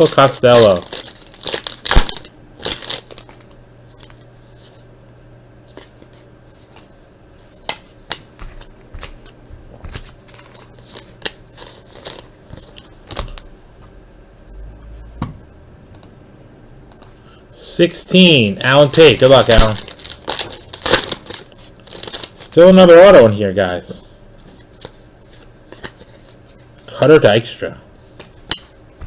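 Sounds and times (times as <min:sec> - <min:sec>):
foil card pack rustling: 0:00.0 - 0:04.8, 0:05.6 - 0:13.4, 0:18.6 - 0:23.1, 0:24.4 - 0:27.2.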